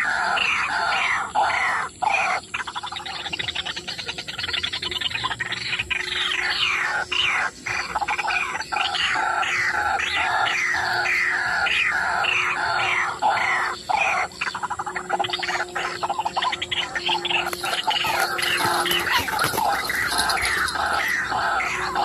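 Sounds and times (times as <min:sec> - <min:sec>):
bird croaking calls: 0:00.0 - 0:22.0
bird trill: 0:00.0 - 0:22.0.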